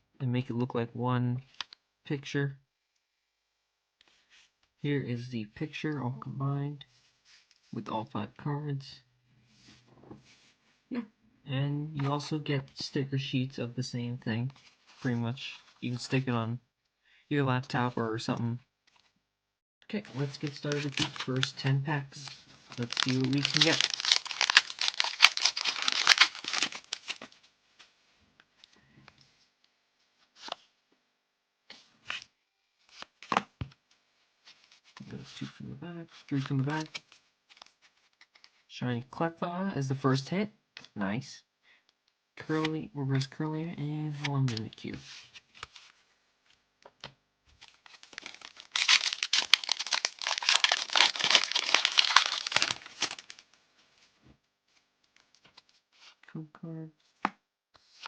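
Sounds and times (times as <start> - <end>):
foil wrapper tearing and crinkling: 20.2 - 21.7, 22.7 - 27.2, 47.6 - 53.4.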